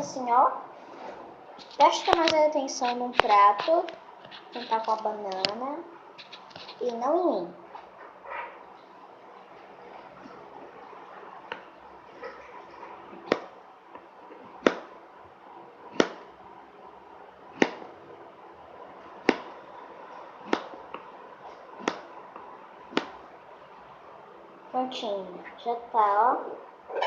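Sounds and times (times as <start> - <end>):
blade knocking on hard surface: 19.2 - 19.6
knife slicing banana: 20.4 - 20.8, 21.8 - 22.1.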